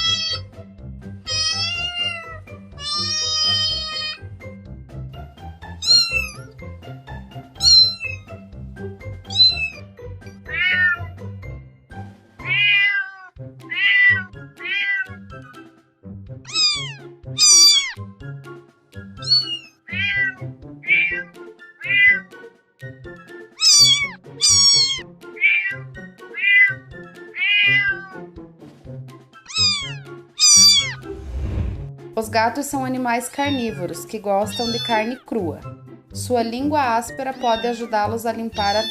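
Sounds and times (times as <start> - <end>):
cat meowing: 0.0 - 0.5, 1.3 - 4.3, 5.8 - 6.5, 7.6 - 8.4, 9.3 - 11.2, 12.4 - 15.3, 16.5 - 18.0, 19.2 - 22.4, 23.6 - 28.3, 29.4 - 31.1, 33.4 - 35.3, 38.6 - 38.9
quiet background music: 0.0 - 38.9.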